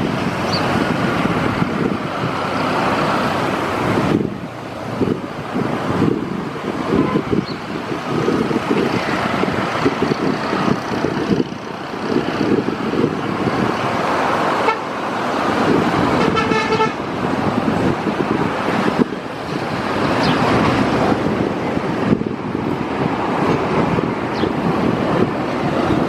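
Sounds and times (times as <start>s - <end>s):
traffic noise: 0.0s - 26.0s
wind buffeting microphone: 0.0s - 26.0s
vehicle horn toot: 6.9s - 7.3s, 14.6s - 14.9s, 16.2s - 17.0s.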